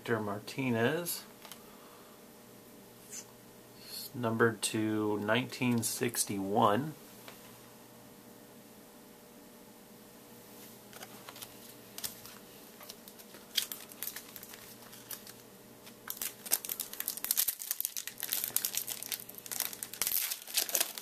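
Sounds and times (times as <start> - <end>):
foil wrapper crinkling and tearing: 12.8 - 21.0.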